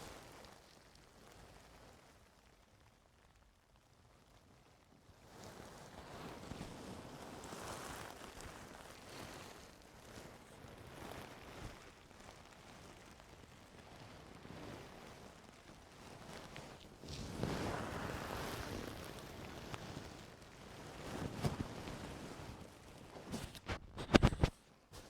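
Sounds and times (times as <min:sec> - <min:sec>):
tools scraping in ear: 0:23.3 - 0:24.6.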